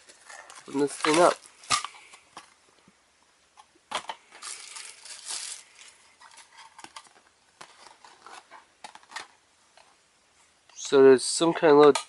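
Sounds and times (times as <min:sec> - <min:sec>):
packaging crinkling and rustling: 0:00.0 - 0:02.6, 0:03.9 - 0:09.9.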